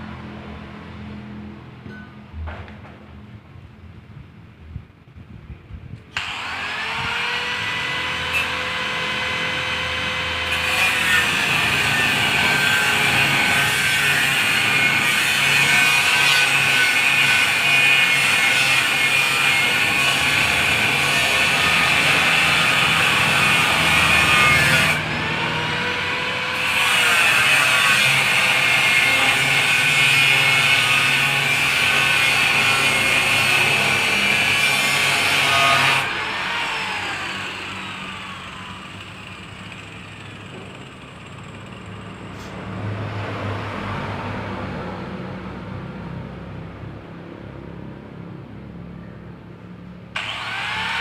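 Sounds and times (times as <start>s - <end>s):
angle grinder grinding metal: 6.2s - 42.5s, 50.2s - 51.0s.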